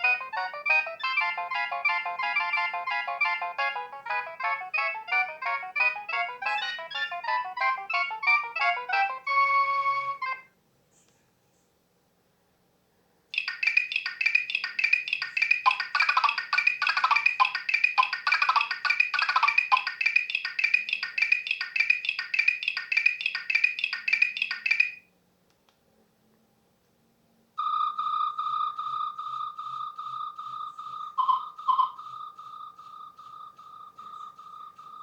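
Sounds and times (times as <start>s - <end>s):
phone ringtone beeping notes: 0.0s - 10.5s, 13.4s - 25.1s, 27.6s - 32.4s.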